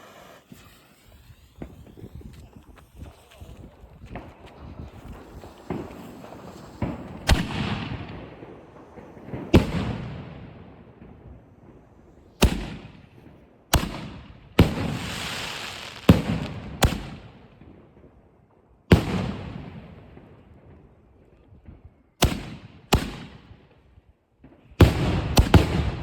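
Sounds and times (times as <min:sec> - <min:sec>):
firework bangs with echo: 0:04.1 - 0:17.6, 0:24.8 - 0:26.0.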